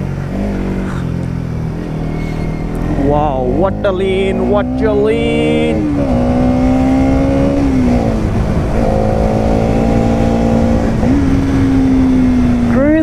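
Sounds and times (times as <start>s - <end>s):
low wind rumble: 0.0s - 13.0s
motorcycle engine: 0.0s - 13.0s.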